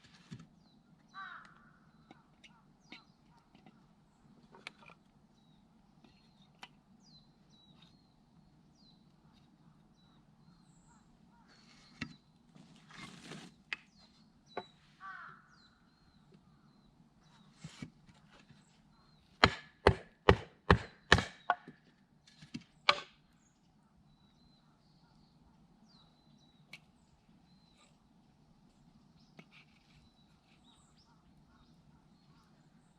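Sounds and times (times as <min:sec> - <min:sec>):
blade striking firewood: 0:19.4 - 0:21.8, 0:22.5 - 0:23.2.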